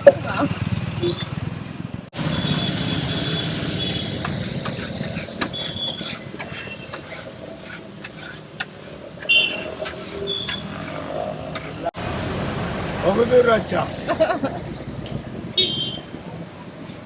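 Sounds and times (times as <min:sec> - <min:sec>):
street traffic: 0:00.0 - 0:17.0.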